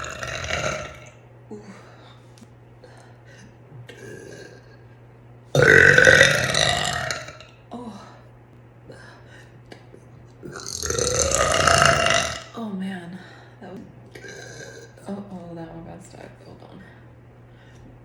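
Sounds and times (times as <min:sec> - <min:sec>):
woman burping: 0:00.0 - 0:01.1, 0:03.9 - 0:04.8, 0:05.6 - 0:07.5, 0:10.5 - 0:12.6, 0:14.1 - 0:15.0.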